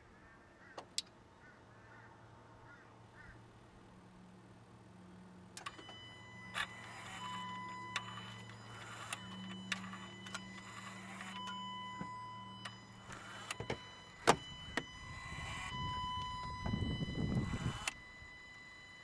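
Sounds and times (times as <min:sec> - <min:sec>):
actuator buzzing: 0:05.5 - 0:19.0.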